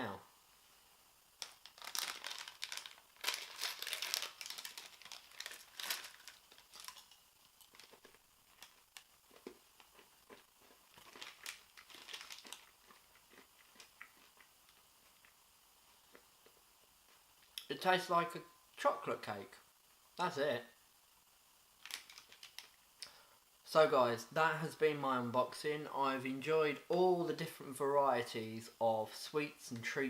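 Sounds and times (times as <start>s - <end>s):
candy packet crinkling and tearing: 1.4s - 14.8s, 21.8s - 22.8s
candies crunching: 1.4s - 15.3s, 21.8s - 23.1s.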